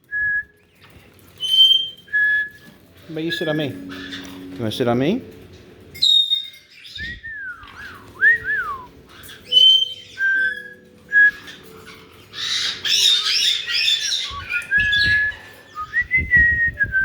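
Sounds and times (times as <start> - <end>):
parrots whistling: 1.4 - 4.5, 5.9 - 16.2.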